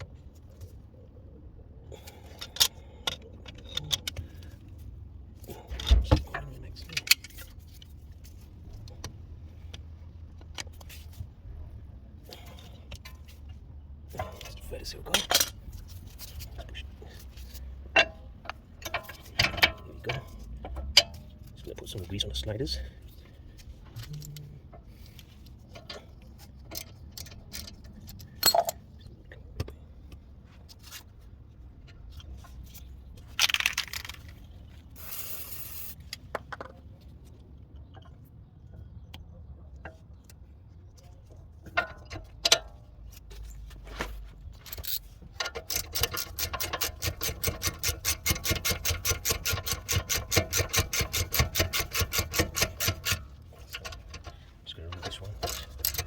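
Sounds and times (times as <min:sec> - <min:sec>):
metal tools clinking and scraping: 0:12.3 - 0:29.2, 0:41.0 - 0:56.0
ratchet wrench clicking: 0:44.7 - 0:54.3, 0:55.3 - 0:56.0.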